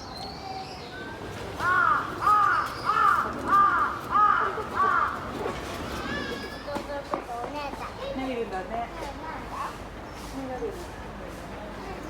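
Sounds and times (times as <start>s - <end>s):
crow cawing: 1.6s - 5.1s.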